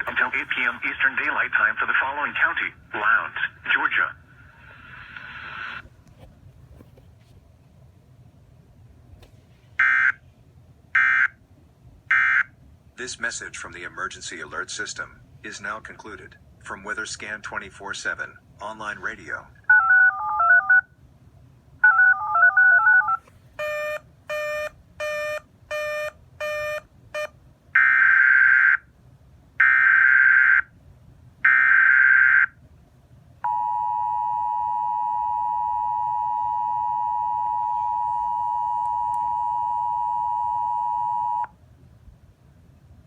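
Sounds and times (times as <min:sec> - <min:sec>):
two-tone attention signal: 0:33.5 - 0:41.5.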